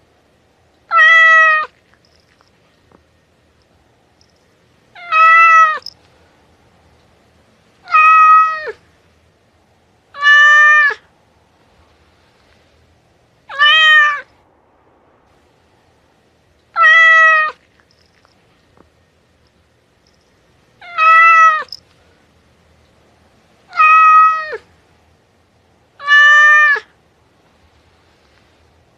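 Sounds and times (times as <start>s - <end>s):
cat meowing: 0.9s - 1.8s, 5.0s - 5.9s, 7.8s - 8.8s, 10.1s - 11.0s, 13.5s - 14.3s, 16.7s - 17.6s, 20.8s - 21.8s, 23.7s - 24.7s, 26.0s - 26.9s.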